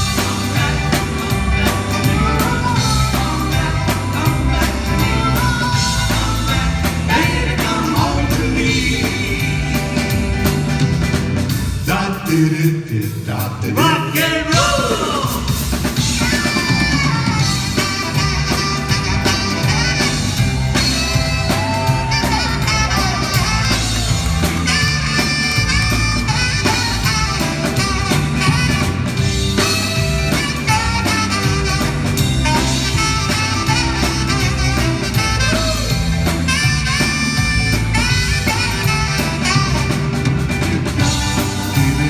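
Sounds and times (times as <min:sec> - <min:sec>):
lead instrument playing melody: 0:00.0 - 0:07.3, 0:16.0 - 0:42.0
bass line: 0:00.0 - 0:42.0
drums: 0:00.0 - 0:42.0.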